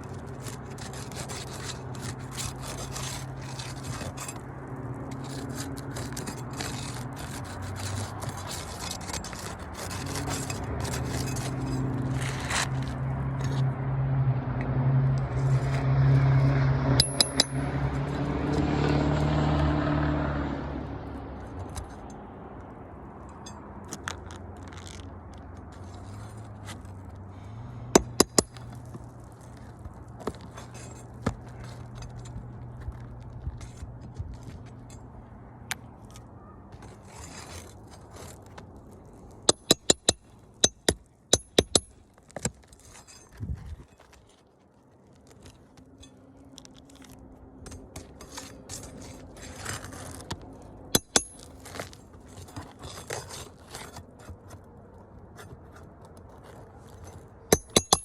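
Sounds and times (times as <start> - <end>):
shingles scraping: 0.0 - 13.7, 23.4 - 27.2, 28.0 - 58.0
sharp metallic clicks: 39.5 - 41.9.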